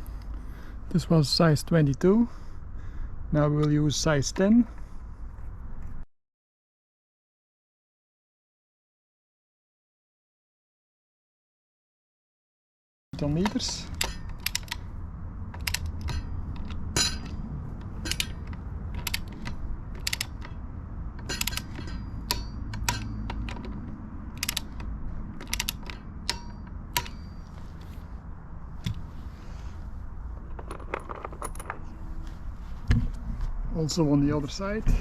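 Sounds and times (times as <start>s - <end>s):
low background rumble: 0.0s - 6.0s, 13.2s - 35.0s
ratchet wrench clicking: 13.3s - 14.9s, 15.5s - 20.6s, 21.2s - 27.6s.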